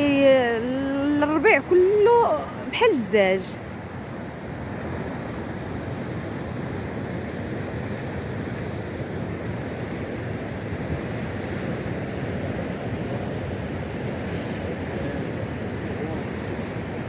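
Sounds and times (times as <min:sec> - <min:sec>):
sea surf rushing: 0:00.0 - 0:17.0
wind buffeting microphone: 0:00.0 - 0:17.0.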